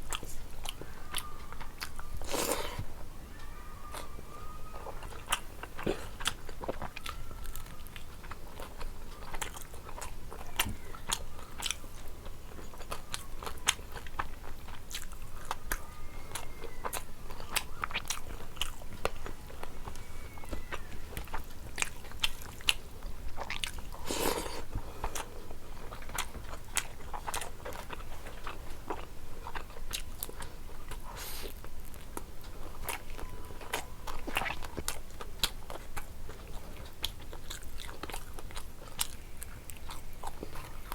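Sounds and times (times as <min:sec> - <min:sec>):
person chewing food: 0:00.0 - 0:40.9.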